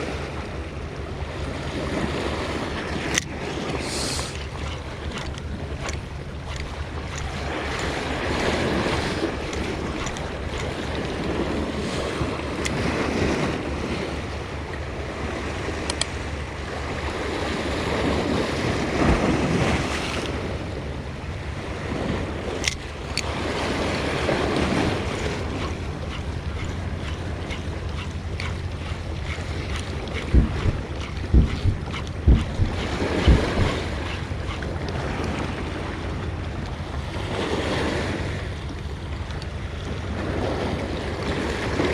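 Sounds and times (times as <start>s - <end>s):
wind rumbling on microphone: 0.0s - 41.9s
waves washing against rocks: 1.2s - 20.8s, 21.4s - 38.6s.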